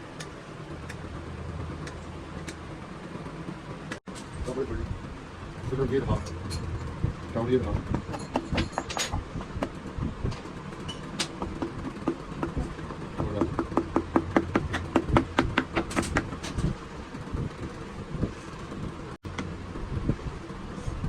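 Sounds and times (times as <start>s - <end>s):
steady low hum: 0.0s - 21.0s
hand tools tapping on metal: 7.6s - 16.7s.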